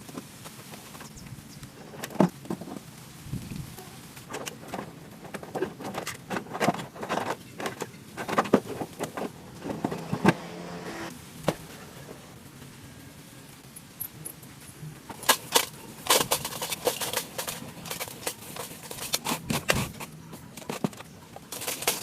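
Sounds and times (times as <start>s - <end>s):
hard objects clicking and knocking: 4.2s - 10.6s, 15.1s - 22.0s.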